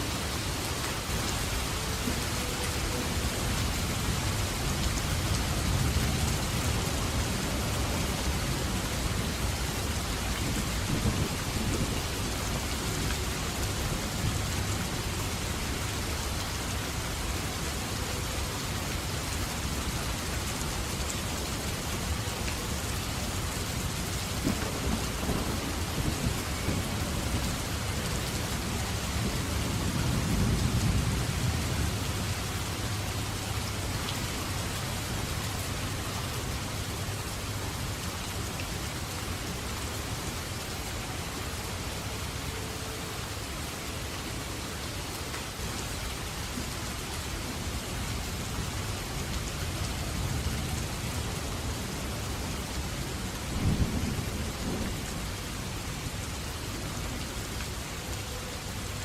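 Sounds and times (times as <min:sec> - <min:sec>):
heavy rain falling: 0:00.0 - 0:59.0
thunder rumbling: 0:24.3 - 0:32.3, 0:53.4 - 0:55.3.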